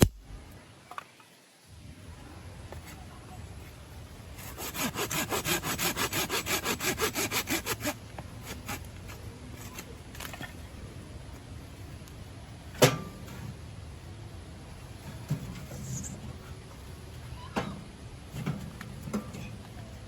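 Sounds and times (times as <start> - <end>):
rapid rasping strokes: 4.4 - 10.0.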